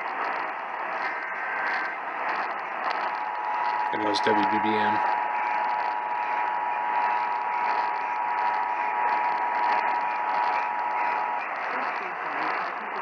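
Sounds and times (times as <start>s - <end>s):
radio static hiss: 0.0s - 13.0s.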